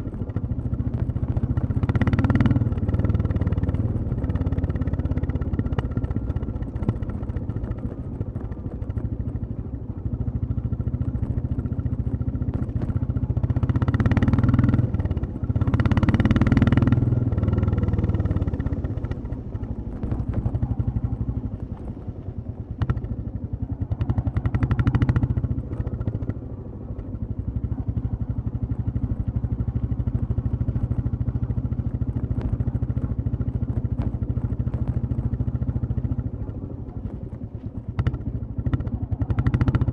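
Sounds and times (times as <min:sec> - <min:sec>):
motorcycle engine running: 0:00.0 - 0:39.9.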